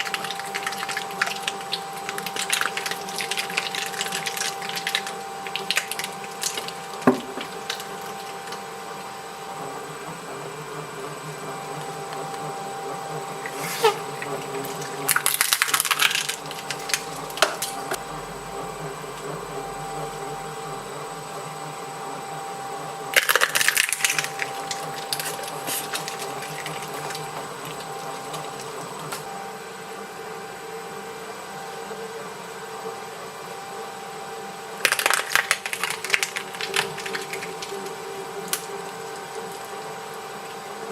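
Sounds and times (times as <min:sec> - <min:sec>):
shredder crackling and tearing: 0:00.0 - 0:09.1, 0:13.3 - 0:18.0, 0:23.1 - 0:29.3, 0:34.8 - 0:40.9
shredder motor hum: 0:00.0 - 0:40.9.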